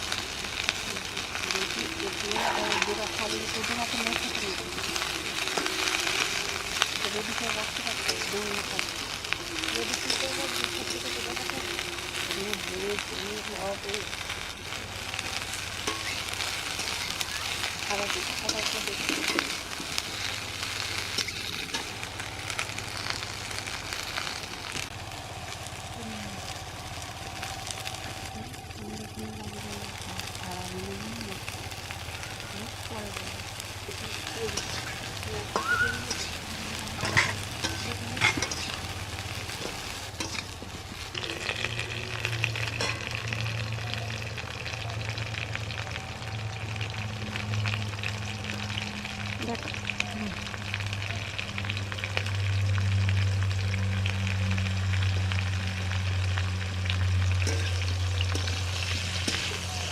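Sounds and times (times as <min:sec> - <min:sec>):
food sizzling in hot oil: 0:00.0 - 0:59.9
stirring in a pan: 0:31.4 - 0:44.6, 0:56.9 - 0:59.9.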